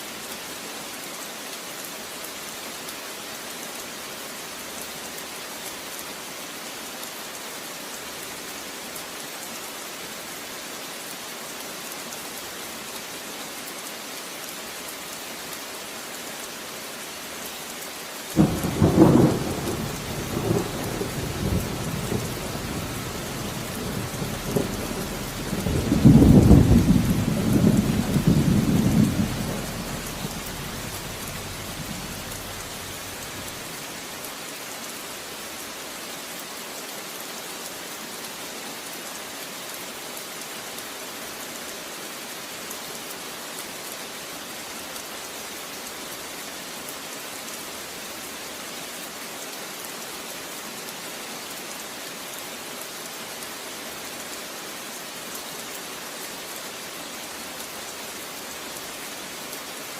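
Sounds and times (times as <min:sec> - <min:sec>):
steady rain: 0:00.0 - 0:59.9
thunder clap and rumbling: 0:18.4 - 0:33.6.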